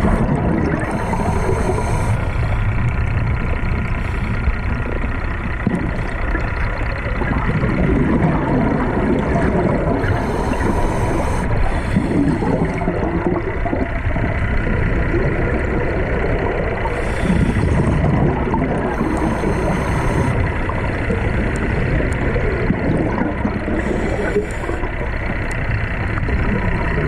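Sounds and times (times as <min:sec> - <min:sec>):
bubbling exhales: 0:00.0 - 0:02.7, 0:03.5 - 0:25.4
hissing regulator inhale: 0:00.0 - 0:06.5, 0:09.9 - 0:12.9, 0:16.8 - 0:21.1, 0:23.6 - 0:25.7
faint steady tones: 0:00.0 - 0:27.0
underwater drone: 0:00.0 - 0:27.0.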